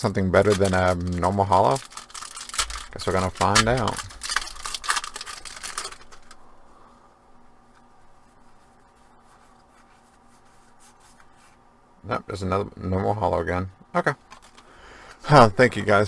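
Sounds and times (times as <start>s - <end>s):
card pack crinkling: 0.0s - 6.4s
low steady hum: 0.0s - 16.0s.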